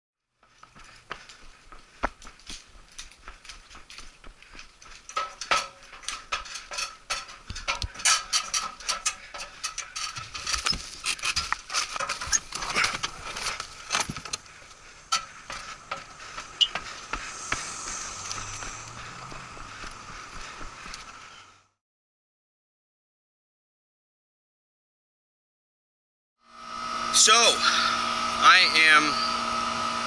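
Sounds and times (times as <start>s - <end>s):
faint steady whine: 8.4s - 21.6s.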